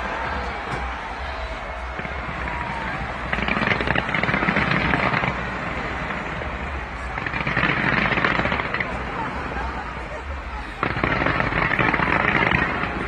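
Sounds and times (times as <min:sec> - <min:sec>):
fireworks crackling: 0:00.0 - 0:13.0
steady low rumble: 0:00.0 - 0:13.0.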